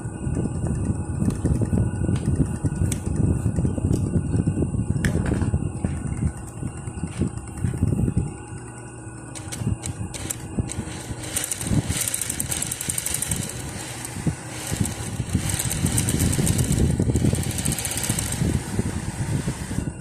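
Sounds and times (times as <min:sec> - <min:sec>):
sewing machine running: 0:08.5 - 0:19.3.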